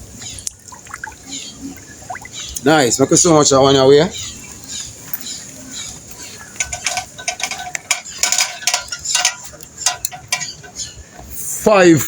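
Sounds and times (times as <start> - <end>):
objects clicking and clattering: 6.0 - 10.9.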